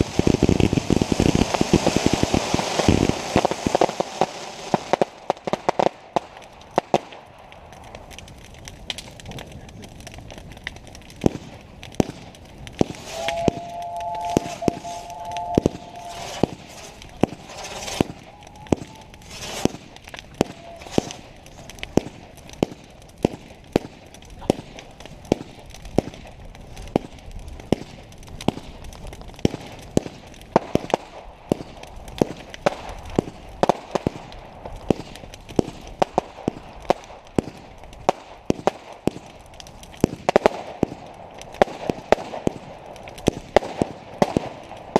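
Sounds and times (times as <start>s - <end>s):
fireworks bangs: 0.0s - 7.4s, 11.1s - 44.9s
fireworks crackling: 0.0s - 44.9s
steady whistling tone: 13.0s - 16.5s.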